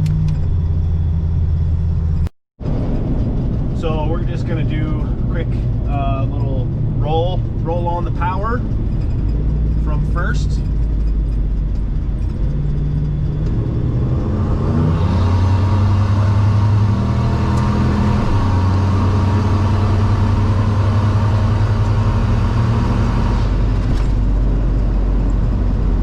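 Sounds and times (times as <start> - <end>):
car engine accelerating: 0.0 - 26.0.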